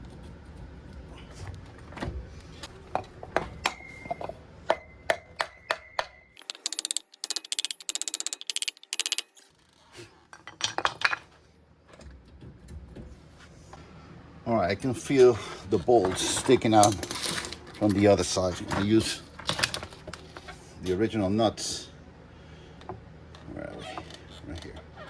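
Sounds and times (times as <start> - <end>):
rapid high rattling: 6.4 - 9.5.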